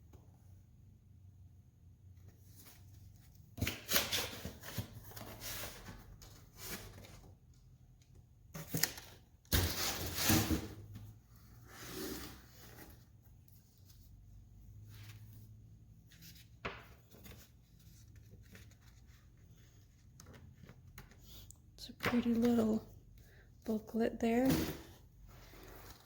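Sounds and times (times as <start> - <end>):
packaging rustling and scraping: 24.3 - 26.0.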